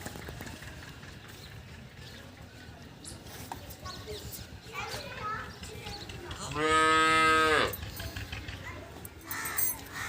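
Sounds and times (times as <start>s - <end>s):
cow mooing: 6.5s - 7.8s.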